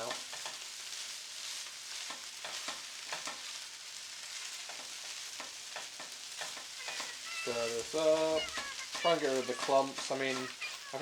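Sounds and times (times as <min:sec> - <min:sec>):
fried rice sizzling in a frying pan: 0:00.0 - 0:11.0
utensil clicking against pan: 0:02.0 - 0:03.5, 0:04.6 - 0:07.2, 0:07.9 - 0:10.6.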